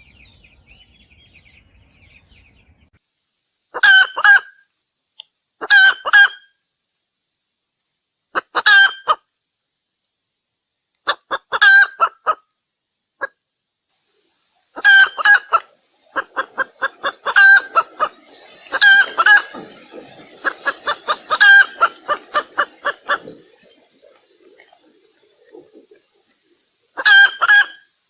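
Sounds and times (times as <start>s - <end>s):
hen clucking: 3.8s - 4.5s, 5.6s - 6.4s, 8.4s - 9.2s, 11.1s - 12.4s, 14.7s - 27.8s.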